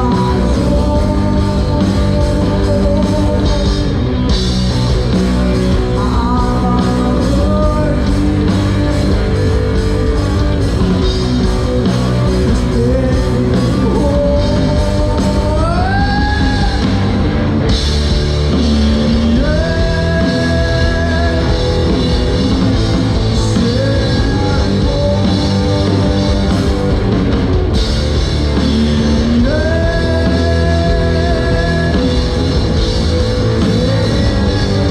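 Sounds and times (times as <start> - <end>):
rock band playing live: 0.0 - 34.9.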